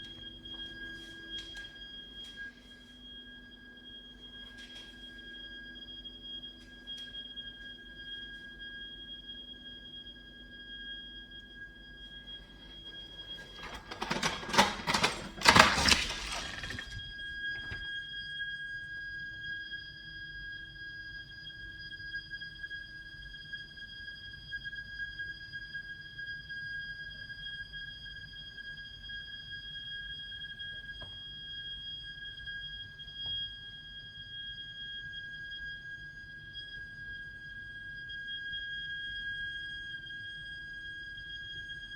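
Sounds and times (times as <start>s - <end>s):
clattering and rustling: 12.5s - 17.9s.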